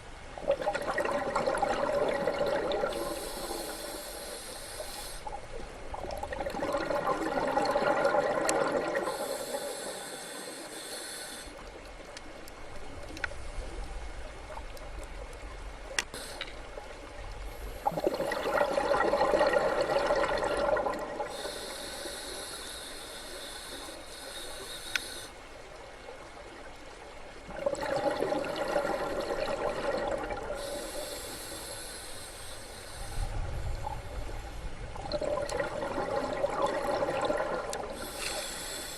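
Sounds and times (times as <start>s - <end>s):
exhaled bubbles gushing: 0.4s - 3.3s, 5.9s - 9.2s, 17.8s - 21.6s, 27.4s - 30.8s, 34.8s - 38.1s
hissing breath through regulator: 2.7s - 5.4s, 9.0s - 11.6s, 16.1s - 16.6s, 21.2s - 25.4s, 30.5s - 33.7s, 37.8s - 38.9s.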